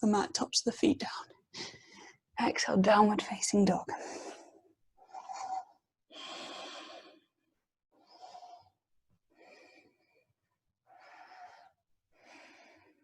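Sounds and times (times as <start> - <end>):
person breathing slowly: 4.0 - 13.0.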